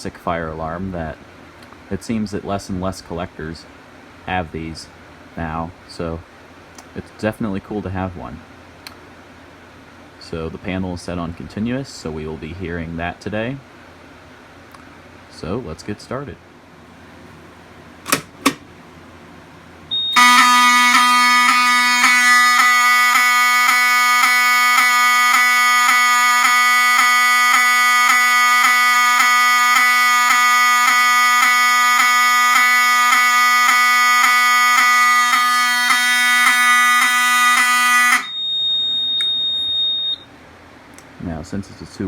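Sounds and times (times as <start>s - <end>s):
pull station clicks: 18.0s - 18.7s
continuous fire alarm horn: 18.1s - 18.6s, 19.9s - 40.3s.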